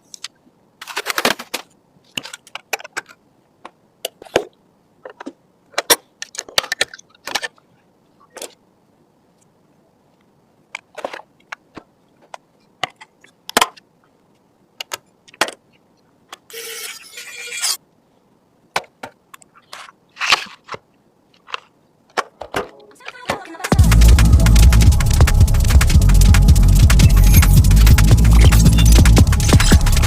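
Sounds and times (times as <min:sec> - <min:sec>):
plastic and metal parts clicking: 0:00.0 - 0:07.6, 0:14.8 - 0:15.7
rustling scrape: 0:19.6 - 0:20.8.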